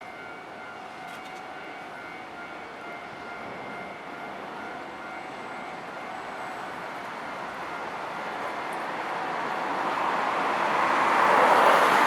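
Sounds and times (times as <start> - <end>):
rumble of traffic: 7.3 - 12.0.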